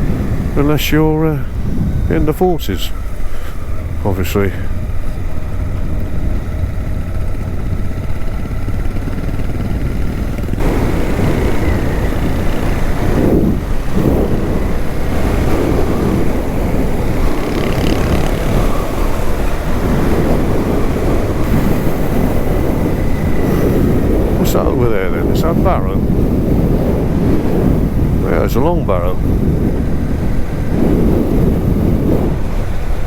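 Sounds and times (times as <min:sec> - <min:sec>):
motorcycle engine running: 0:00.0 - 0:24.5
wind rushing over microphone: 0:00.0 - 0:33.0.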